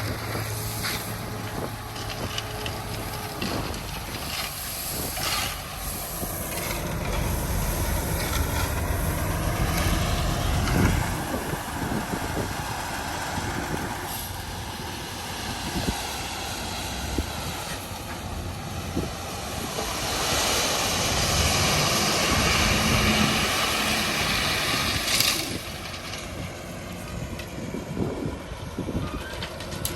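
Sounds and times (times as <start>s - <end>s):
bulldozer engine under load: 0.0s - 29.9s.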